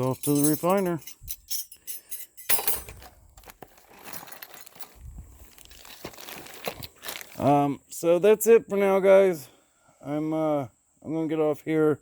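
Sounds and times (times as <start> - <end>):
silverware clinking: 0.0 - 3.0.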